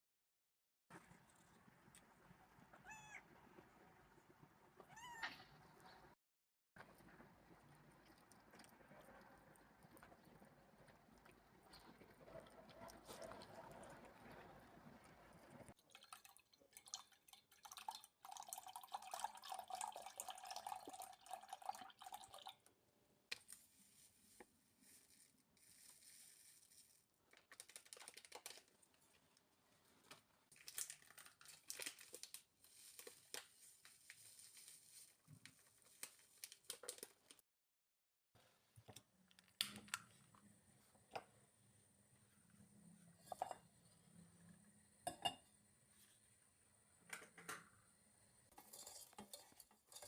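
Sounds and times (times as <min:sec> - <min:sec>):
rustling and crinkling: 0:23.3 - 0:37.4.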